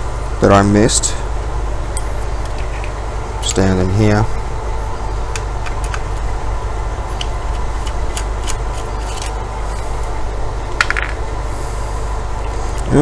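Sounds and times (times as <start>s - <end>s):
steady low hum: 0.0s - 13.0s
screwdriver and small parts clicking: 7.2s - 9.4s.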